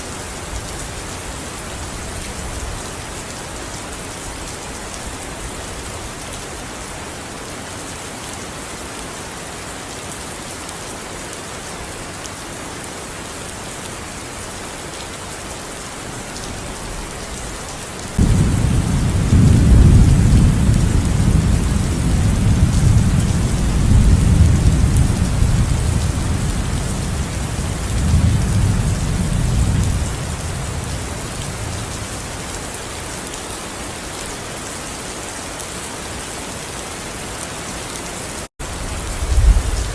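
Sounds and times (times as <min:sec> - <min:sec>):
steady rain falling: 0:00.0 - 0:39.9
thunder rumbling: 0:18.2 - 0:31.9, 0:38.6 - 0:39.9.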